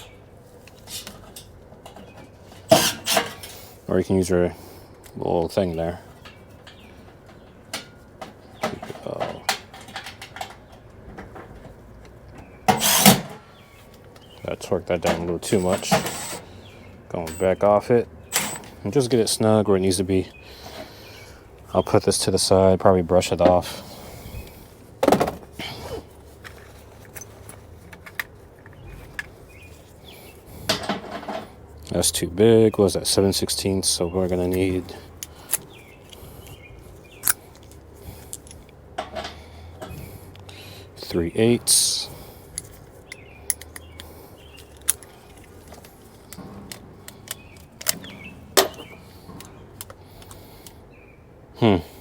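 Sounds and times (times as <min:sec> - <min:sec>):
metallic clicks of hand tools: 0:42.6 - 0:50.8.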